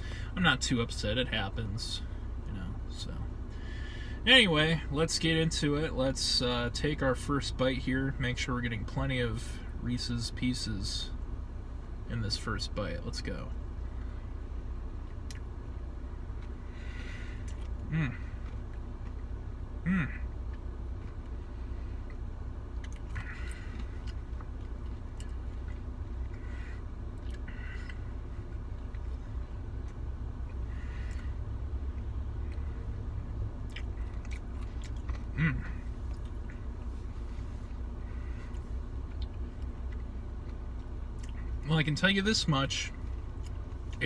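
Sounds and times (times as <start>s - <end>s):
steady low hum: 0.0s - 44.0s
quiet chewing: 16.2s - 19.5s, 20.1s - 41.6s
person humming: 17.9s - 18.3s, 19.8s - 20.2s.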